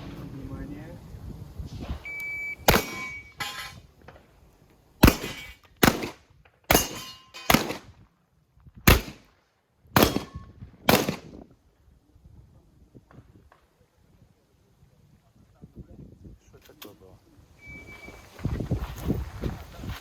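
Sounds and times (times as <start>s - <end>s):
electronic timer beep: 2.0s - 3.4s, 17.6s - 18.2s
shotgun shots: 2.6s - 3.4s, 5.0s - 7.9s, 8.8s - 9.3s, 10.0s - 11.4s
metallic ring: 2.8s - 3.9s, 6.7s - 7.5s.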